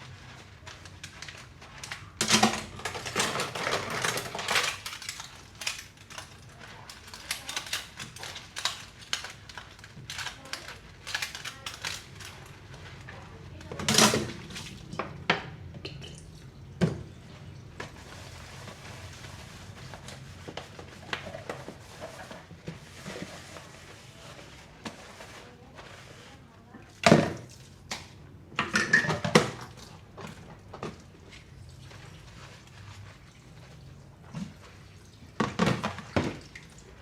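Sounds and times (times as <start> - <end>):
dishes and cutlery clinking: 28.6 - 29.6.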